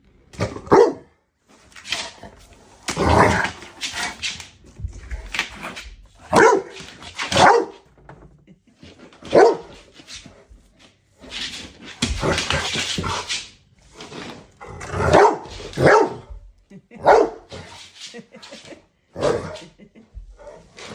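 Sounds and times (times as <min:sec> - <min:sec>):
dog barking: 0:00.6 - 0:01.1, 0:06.3 - 0:07.8, 0:09.3 - 0:09.7, 0:15.0 - 0:16.4, 0:17.0 - 0:17.5.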